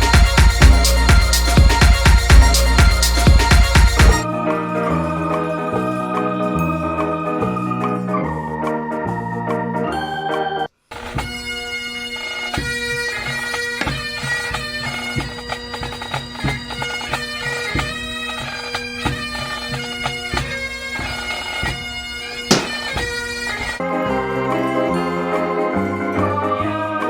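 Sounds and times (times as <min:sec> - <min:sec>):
music with drone and beat: 0:00.0 - 0:04.6.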